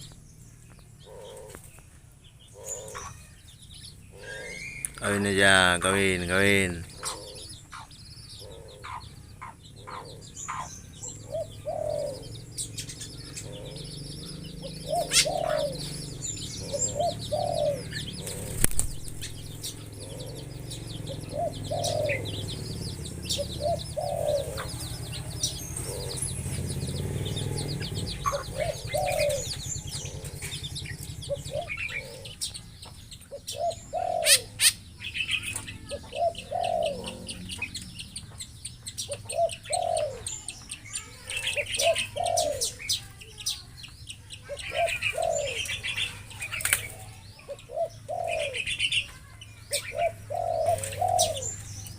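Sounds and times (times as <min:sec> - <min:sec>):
birds cooing: 0:00.0 - 0:51.9
high-pitched bird chirping: 0:00.0 - 0:51.9
sharp clicks: 0:18.5 - 0:19.3.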